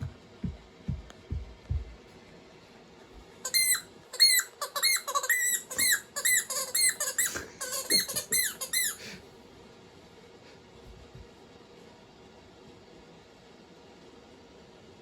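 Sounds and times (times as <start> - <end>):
squeaky toy ball squeaking: 3.4 - 9.0.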